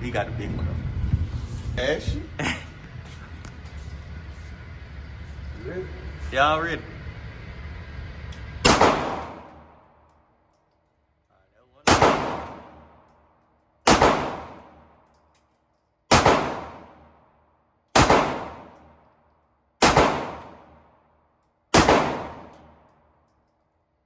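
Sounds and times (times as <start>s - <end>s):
echoing gunshots: 8.6s - 9.8s, 11.8s - 13.0s, 13.8s - 14.9s, 16.1s - 17.2s, 18.0s - 19.0s, 19.8s - 20.8s, 21.7s - 22.8s.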